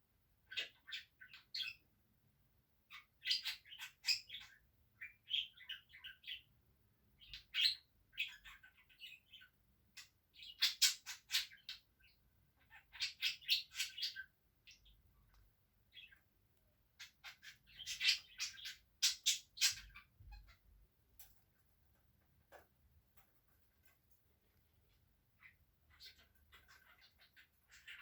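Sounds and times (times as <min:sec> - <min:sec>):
budgerigar chattering: 0:12.6 - 0:14.8, 0:17.0 - 0:20.6.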